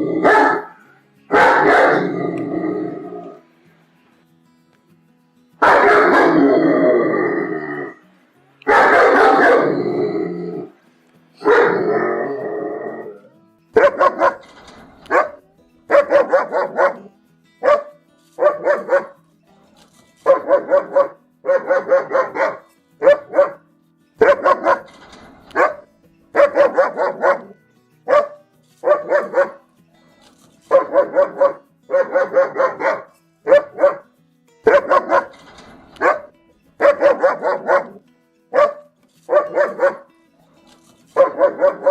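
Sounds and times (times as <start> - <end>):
dog barking: 0.2 - 2.2, 5.6 - 6.5, 8.7 - 9.8, 11.4 - 12.1, 13.8 - 19.2, 20.2 - 23.6, 24.2 - 29.6, 30.7 - 35.4, 36.0 - 40.1, 41.2 - 41.9.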